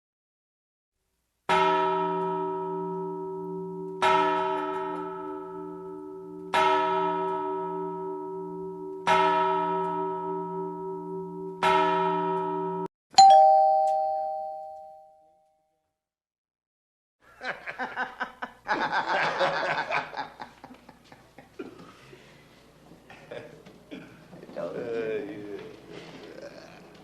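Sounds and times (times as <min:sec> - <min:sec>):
large bell tolling: 0:01.5 - 0:15.1
two-note ding-dong chime: 0:13.2 - 0:15.5.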